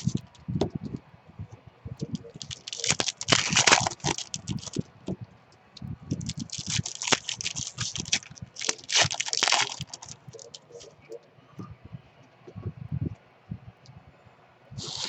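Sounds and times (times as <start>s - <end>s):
foil wrappers crinkling and tearing: 0.0s - 0.4s, 2.1s - 4.8s, 6.1s - 10.9s, 14.8s - 15.0s.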